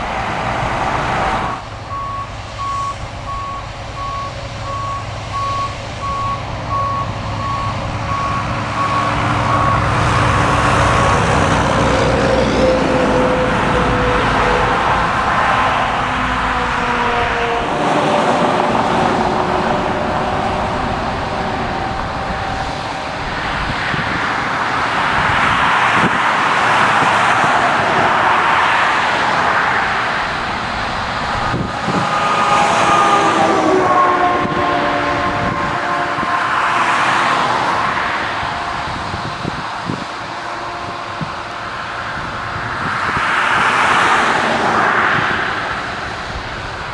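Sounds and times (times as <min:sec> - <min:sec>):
engine rumble: 0:00.0 - 0:46.9
rail cars hissing and rumbling: 0:00.0 - 0:46.9
reversing alarm beeping: 0:01.5 - 0:15.0
long squealing tones: 0:08.1 - 0:23.4, 0:31.3 - 0:37.7.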